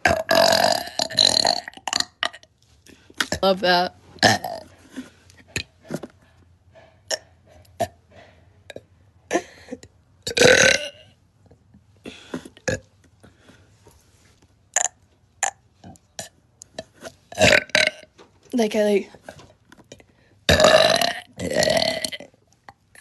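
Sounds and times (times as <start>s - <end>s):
person burping: 0.0s - 2.5s, 4.2s - 4.7s, 9.3s - 11.2s, 12.0s - 12.9s, 17.3s - 18.1s, 20.5s - 22.3s.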